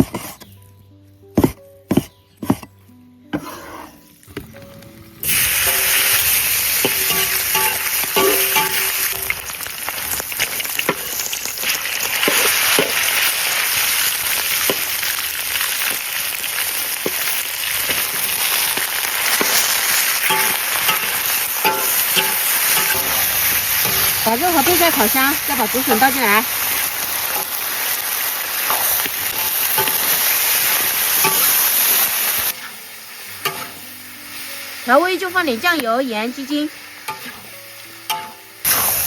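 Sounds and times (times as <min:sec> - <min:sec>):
spatula scraping and clattering: 0:03.4 - 0:04.0, 0:05.6 - 0:09.4, 0:16.8 - 0:24.2
meat sizzling in hot oil: 0:04.4 - 0:39.0.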